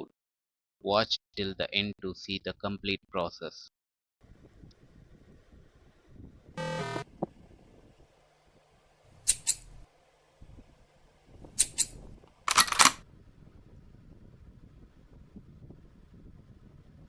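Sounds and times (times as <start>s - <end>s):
crimping tool clicks: 9.3s - 9.7s.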